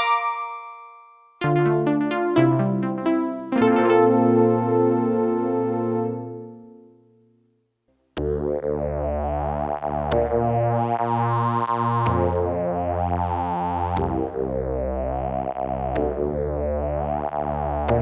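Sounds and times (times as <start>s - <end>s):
synthesizer bass line: 1.4s - 6.6s, 8.2s - 18.0s
pulsing synthesizer chords: 1.4s - 6.8s, 8.2s - 18.0s.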